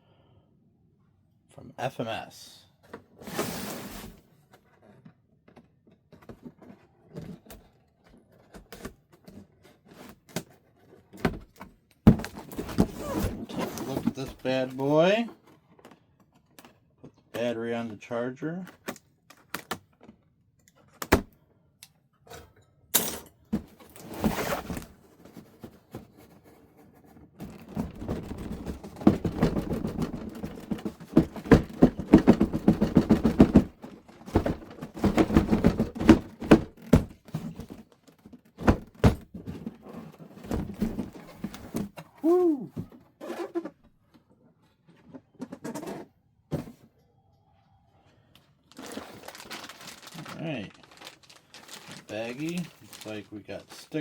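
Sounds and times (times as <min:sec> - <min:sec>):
cardboard rustling and scraping: 0:03.0 - 0:16.8, 0:23.6 - 0:42.1, 0:48.7 - 0:54.0
knocks and thunks: 0:12.1 - 0:14.2, 0:27.4 - 0:37.8, 0:38.6 - 0:39.6.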